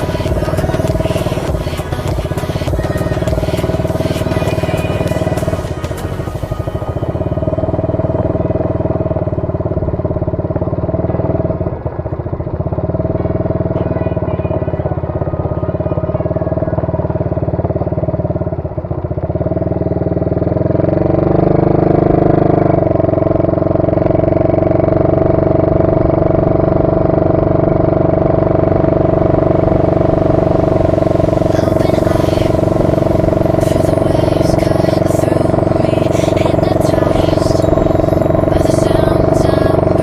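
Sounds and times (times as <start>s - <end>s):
atv engine revving: 0.0s - 40.0s.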